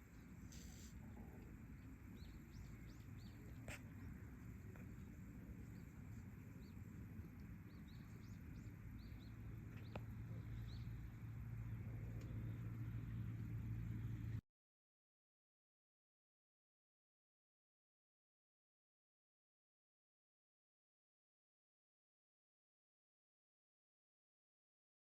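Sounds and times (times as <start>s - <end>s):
low outdoor rumble: 0.0s - 14.4s
small birds chirping: 0.0s - 14.4s
steady low hum: 0.0s - 14.4s.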